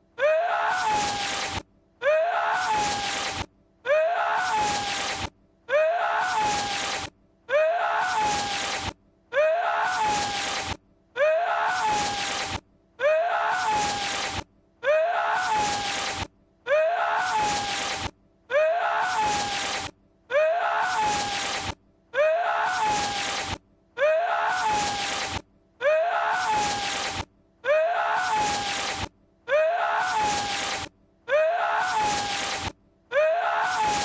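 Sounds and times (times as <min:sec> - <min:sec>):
man's strained vocal outburst: 0:09.3 - 0:10.6, 0:11.2 - 0:12.4, 0:29.5 - 0:34.0.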